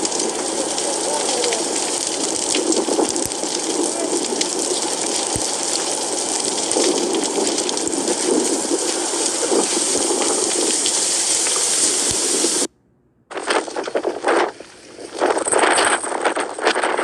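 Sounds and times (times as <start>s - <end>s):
rushing hissing noise with ticks: 0.0s - 12.7s.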